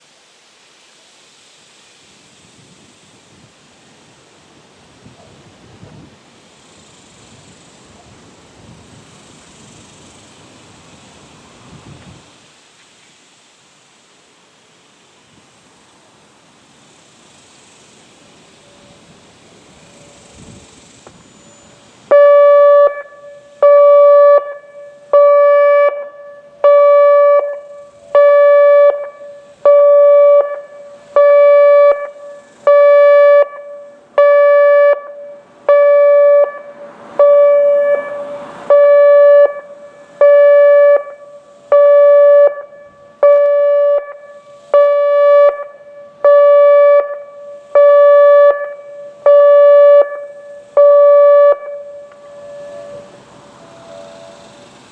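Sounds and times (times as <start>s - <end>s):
warning siren pulsing tone: 21.2s - 54.8s.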